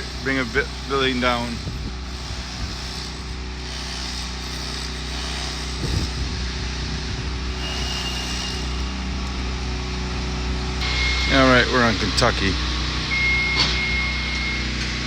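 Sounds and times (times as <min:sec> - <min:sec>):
wind rumbling on microphone: 0:01.5 - 0:02.9, 0:05.7 - 0:07.6
engine humming: 0:05.8 - 0:15.0.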